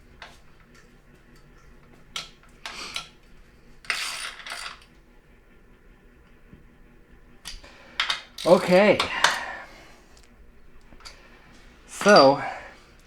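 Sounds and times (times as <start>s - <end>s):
metal tools clinking and clattering: 3.8s - 4.9s.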